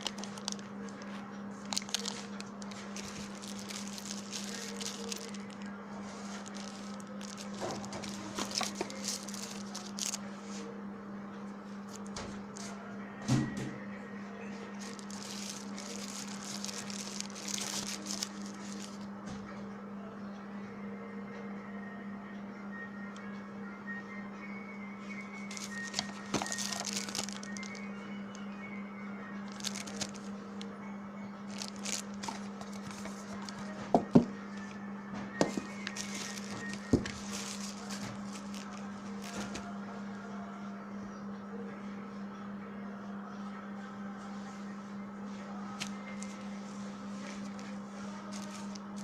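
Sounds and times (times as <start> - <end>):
rustling and handling noise: 0.0 - 10.7, 14.6 - 19.2, 25.4 - 28.4, 29.4 - 30.7, 31.4 - 39.8, 45.3 - 49.0
steady low hum: 0.0 - 49.0.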